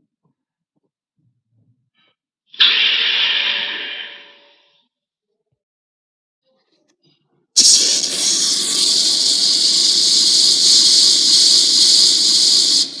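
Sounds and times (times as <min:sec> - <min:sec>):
flamethrower hissing rush: 0:02.6 - 0:04.4, 0:07.6 - 0:13.0.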